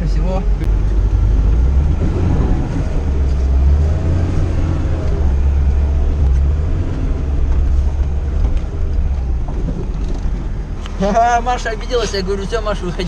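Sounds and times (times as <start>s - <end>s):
car engine running: 0.0s - 13.0s.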